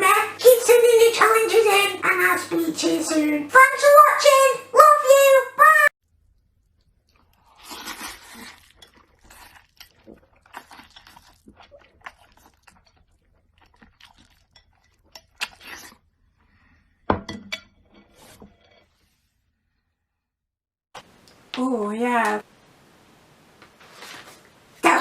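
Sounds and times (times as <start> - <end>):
rustling of objects handled: 23.6 - 24.7.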